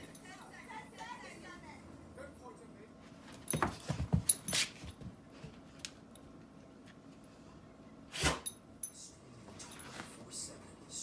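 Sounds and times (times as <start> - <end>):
scuffling knocks and thumps: 3.3 - 5.7.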